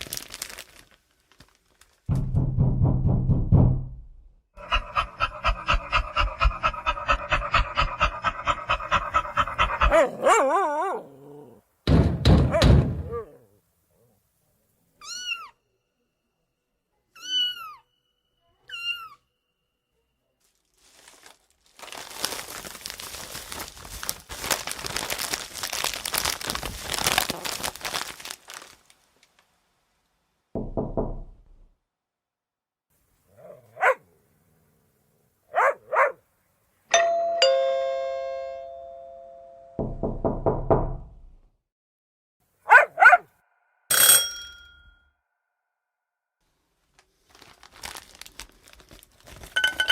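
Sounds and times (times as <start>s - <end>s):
two-note doorbell chime: 36.9s - 39.8s.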